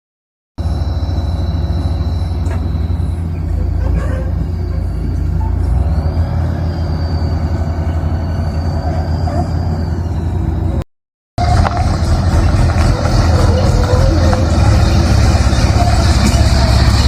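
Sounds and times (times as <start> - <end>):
diesel engine rumbling: 0.6 - 17.0.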